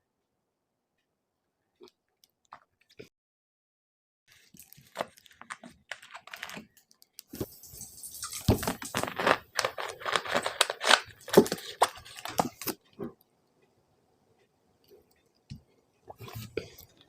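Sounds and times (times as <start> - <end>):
crinkly handling noise: 4.3 - 13.2.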